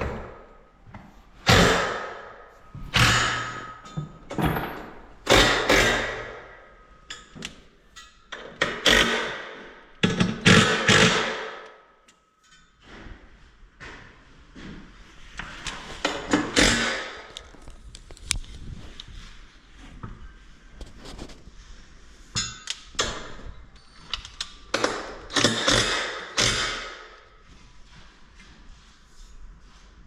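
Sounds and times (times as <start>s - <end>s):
heavy metal thuds and clangs: 1.4s - 6.6s.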